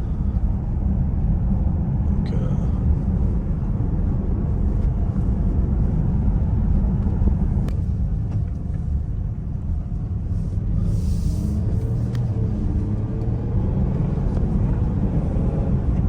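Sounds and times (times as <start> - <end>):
car engine rumble: 0.0 - 16.0
road noise: 0.0 - 16.0
brief hiss: 10.8 - 11.6.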